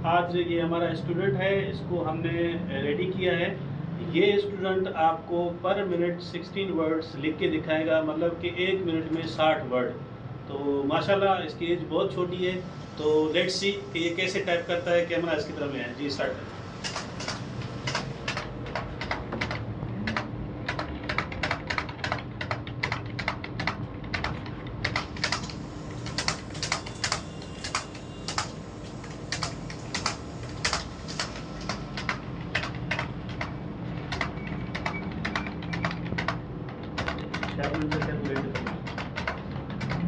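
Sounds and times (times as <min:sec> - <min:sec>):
fast keyboard typing: 0:16.8 - 0:40.0.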